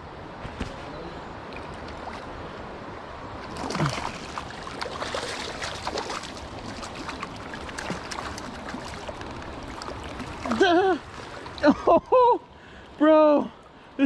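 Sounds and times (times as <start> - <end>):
stream water running: 0.0 - 14.0
sharp water splashes: 3.4 - 11.7.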